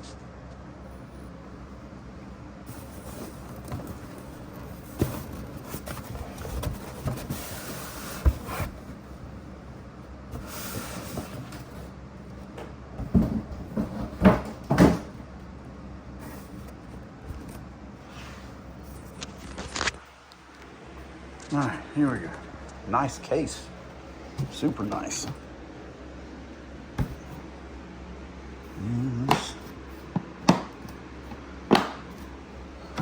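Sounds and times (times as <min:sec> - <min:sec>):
cardboard sliding and rustling: 0:02.7 - 0:09.3, 0:10.3 - 0:11.9, 0:27.0 - 0:27.5.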